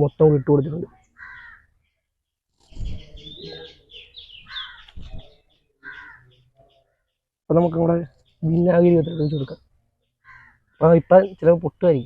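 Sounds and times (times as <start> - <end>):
small birds chirping: 0.0 - 12.0
crows cawing: 0.3 - 1.7, 4.4 - 4.9, 5.8 - 7.1, 10.2 - 10.9.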